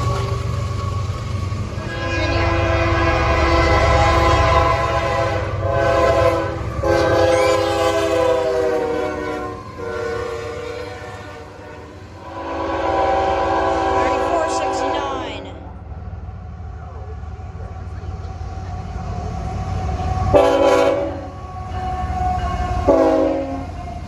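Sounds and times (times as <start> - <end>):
train rumble: 0.0 - 24.0
locomotive air horn blasts: 1.8 - 15.5, 20.3 - 23.7.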